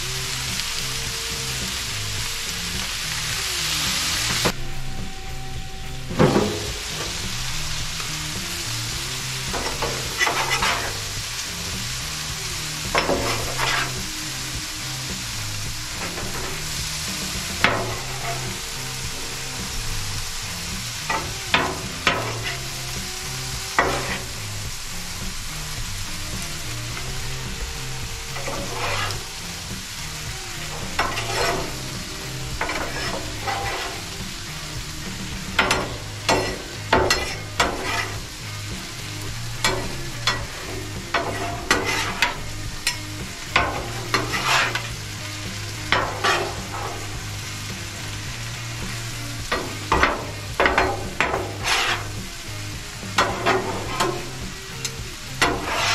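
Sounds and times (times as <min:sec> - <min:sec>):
food sizzling on a griddle: 0:00.0 - 0:55.9
metal spatulas scraping and clacking: 0:09.4 - 0:11.2, 0:12.9 - 0:14.1, 0:28.4 - 0:29.2, 0:30.6 - 0:32.0, 0:32.6 - 0:34.1, 0:35.1 - 0:38.4, 0:39.6 - 0:45.0, 0:45.9 - 0:47.1, 0:49.5 - 0:52.2, 0:53.1 - 0:55.9.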